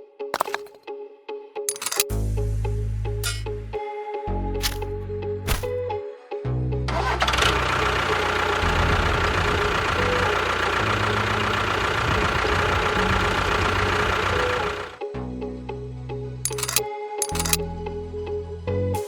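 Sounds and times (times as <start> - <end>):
motor running with rattly noise: 7.2 - 15.0, 16.5 - 17.6.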